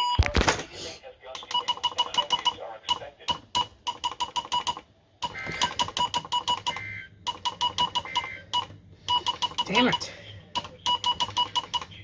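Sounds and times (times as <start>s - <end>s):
rapid high-pitched electronic beeping: 10.8s - 12.0s.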